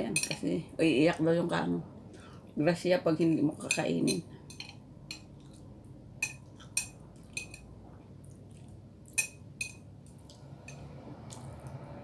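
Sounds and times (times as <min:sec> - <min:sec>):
cutlery scraping a plate: 0:03.7 - 0:05.3, 0:06.2 - 0:07.7.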